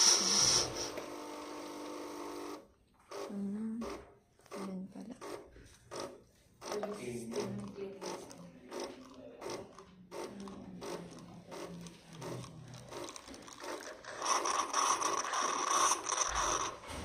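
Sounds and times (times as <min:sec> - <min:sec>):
pump clicking rhythmically: 0:00.0 - 0:17.0.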